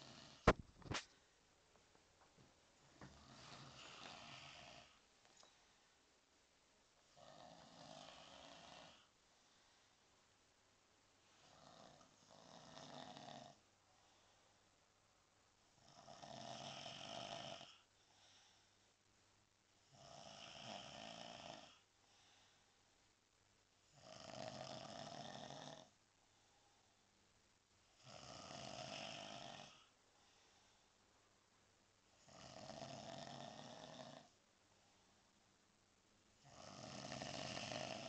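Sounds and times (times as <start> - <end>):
man snoring: 0.0 - 0.5, 3.2 - 5.0, 7.2 - 9.1, 11.4 - 13.6, 15.8 - 17.9, 19.9 - 21.8, 23.9 - 25.9, 28.0 - 29.9, 32.2 - 34.3, 36.4 - 38.0
faint breaths: 2.9 - 6.1, 7.2 - 10.3, 11.2 - 14.8, 16.4 - 19.2, 20.2 - 23.0, 25.6 - 27.2, 27.9 - 31.2.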